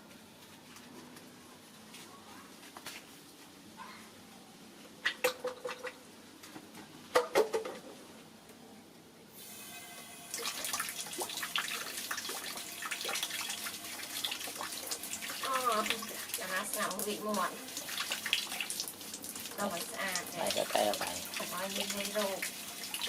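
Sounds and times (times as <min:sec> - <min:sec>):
tap water running and splashing: 0:09.4 - 0:23.0.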